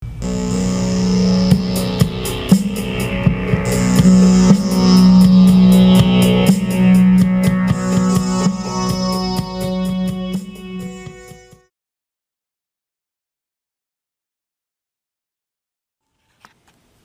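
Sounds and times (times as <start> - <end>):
rock music with guitar: 0.3 - 11.6
steady drum beat: 0.3 - 11.6.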